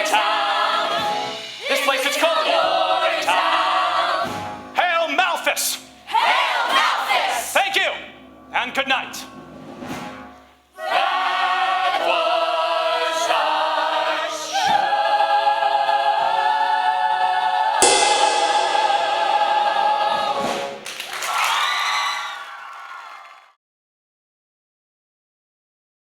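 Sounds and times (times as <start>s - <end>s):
chorus singing with band: 0.0s - 4.7s, 6.1s - 7.5s, 10.8s - 21.0s
cymbal crash: 1.2s - 2.3s, 17.8s - 21.0s.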